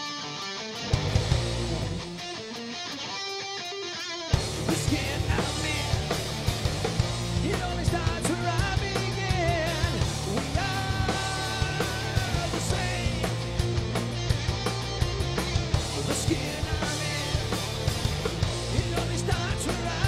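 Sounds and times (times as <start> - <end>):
electric guitar: 0.0 - 20.0
metal band playing live: 0.0 - 20.0
drum beat: 4.4 - 20.0.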